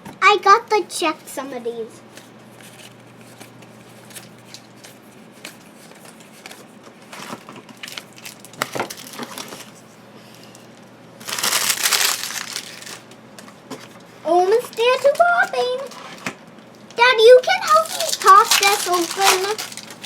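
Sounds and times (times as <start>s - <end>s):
plastic wrapper crinkling: 2.6s - 9.8s, 11.2s - 13.2s, 14.5s - 16.3s, 17.3s - 20.0s.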